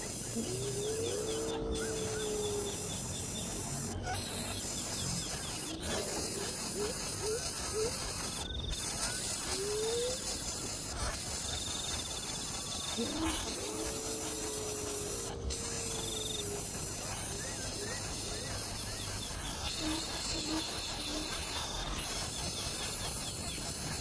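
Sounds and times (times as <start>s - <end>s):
crickets trilling: 0.0s - 24.0s
steady hiss: 0.0s - 24.0s
short rising calls: 12.9s - 18.6s.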